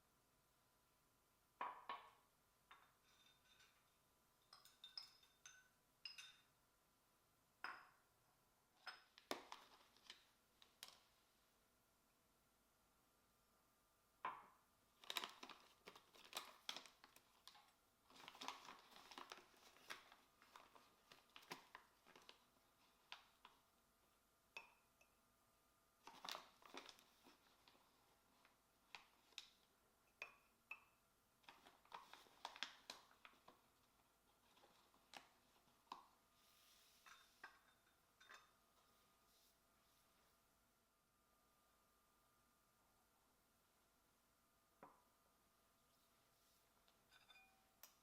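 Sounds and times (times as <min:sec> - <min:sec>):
packaging crinkling: 0:15.0 - 0:23.5, 0:26.0 - 0:27.9, 0:31.4 - 0:33.6.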